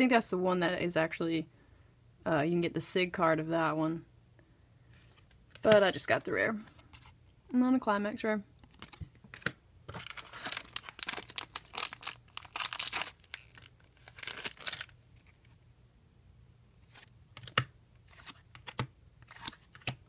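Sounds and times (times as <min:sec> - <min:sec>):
foil wrapper tearing and crinkling: 0:10.0 - 0:15.4.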